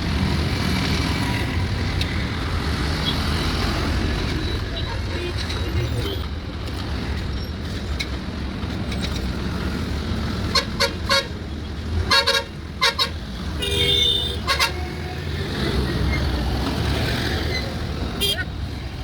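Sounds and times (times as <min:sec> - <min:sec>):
highway traffic rumble: 0:00.0 - 0:19.0
vehicle horns honking: 0:10.5 - 0:11.4, 0:12.0 - 0:15.2, 0:18.2 - 0:18.5.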